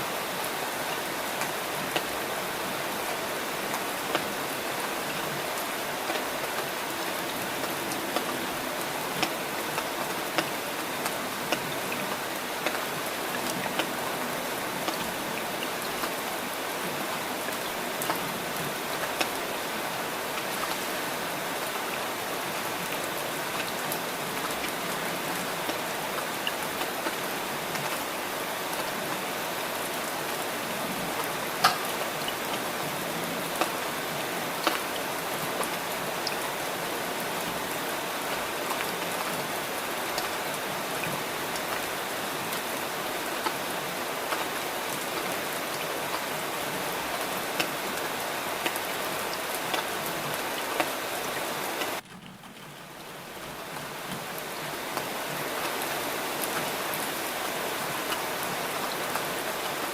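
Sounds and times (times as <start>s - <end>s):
steady rain hiss: 0.0s - 59.9s
raindrop taps: 31.6s - 32.5s, 35.5s - 39.2s, 51.8s - 55.8s.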